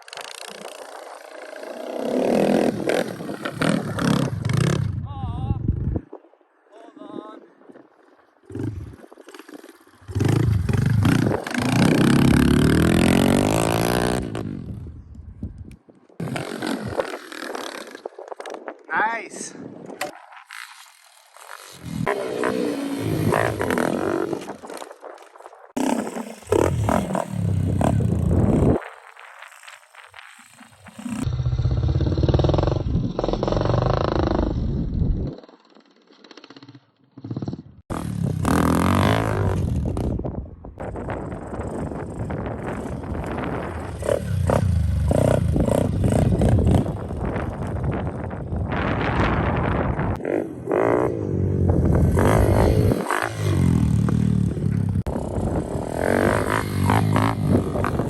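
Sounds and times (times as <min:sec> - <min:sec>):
motorbike engine accelerating: 0:08.5 - 0:15.0, 0:30.9 - 0:35.4, 0:41.0 - 0:58.0.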